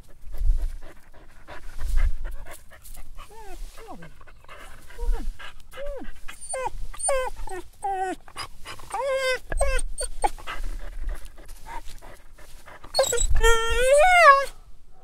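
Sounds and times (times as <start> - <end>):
dog whining: 5.8 - 8.2, 8.9 - 10.5, 12.9 - 14.5.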